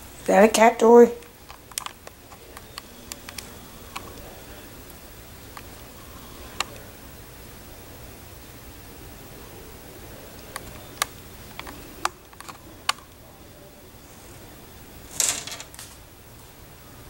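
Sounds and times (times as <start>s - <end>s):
rattling clicks: 1.3s - 4.2s.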